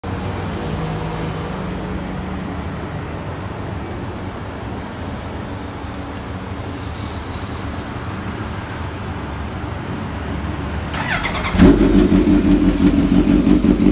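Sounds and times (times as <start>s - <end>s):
motorcycle idling at low revs: 11.0s - 13.9s.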